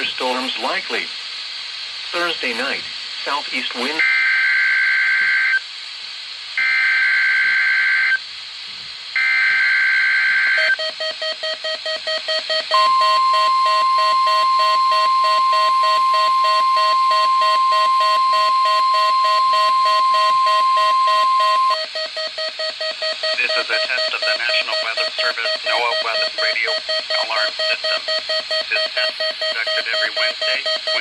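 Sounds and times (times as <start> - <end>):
steady warning alarm tone: 9.2 - 31.0
rapid alarm beeps: 10.6 - 31.0.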